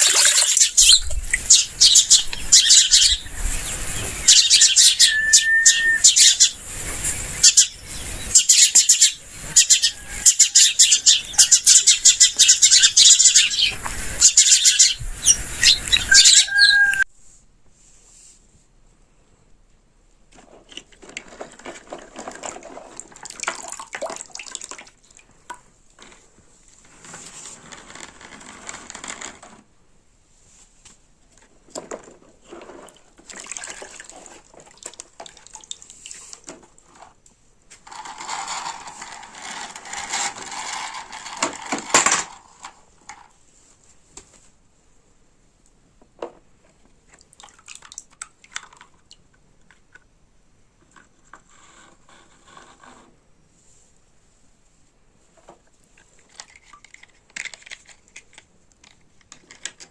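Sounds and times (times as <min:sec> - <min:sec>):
water pouring and splashing: 0:00.0 - 0:08.4, 0:22.2 - 0:25.2, 0:32.6 - 0:36.5.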